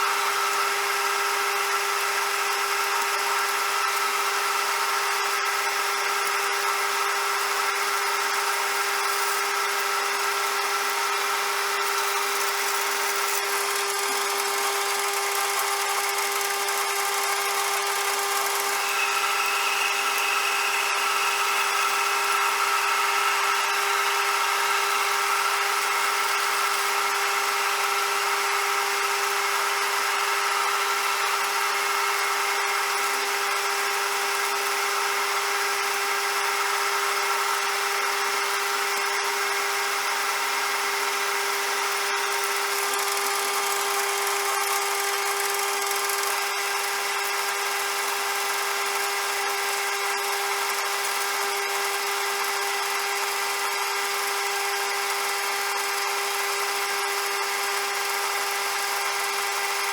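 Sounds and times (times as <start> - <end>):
metal lathe whining: 7.7 - 35.8
higher whine: 16.8 - 28.3.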